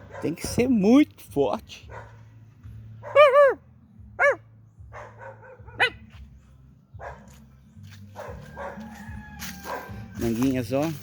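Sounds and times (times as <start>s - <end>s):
dog barking: 0.0s - 0.6s, 1.8s - 2.3s, 3.0s - 3.6s, 4.2s - 6.2s, 7.0s - 7.4s, 8.1s - 9.0s, 9.6s - 10.0s.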